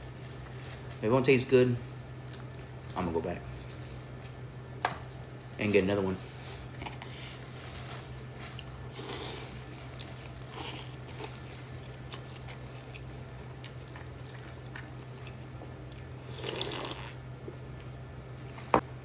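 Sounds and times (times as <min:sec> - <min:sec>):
steady low hum: 0:00.0 - 0:19.0
person chewing and slurping noodles: 0:08.6 - 0:17.2.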